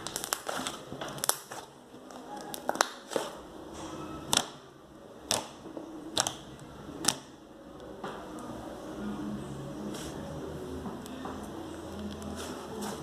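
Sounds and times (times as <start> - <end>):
slime clicking pops: 5.3 - 6.4.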